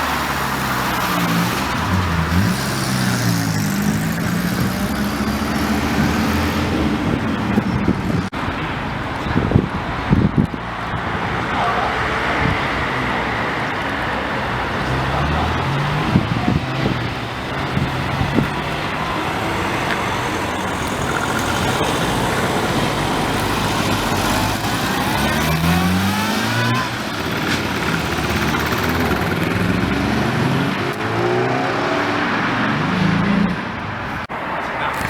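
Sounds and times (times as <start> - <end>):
cars accelerating hard: 0.0 - 35.0
sharp exhaust pops: 14.8 - 31.3.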